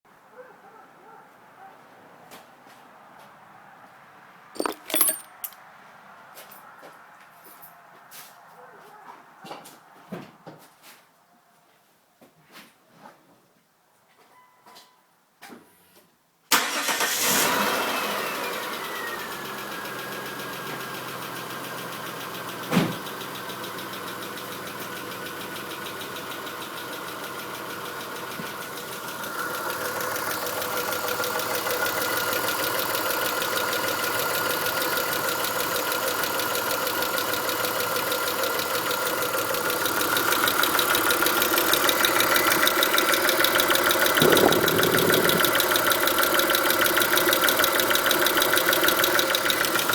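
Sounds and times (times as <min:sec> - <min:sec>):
car engine starting and running: 0:16.5 - 0:49.9
rapid ticking engine knock: 0:25.8 - 0:49.9.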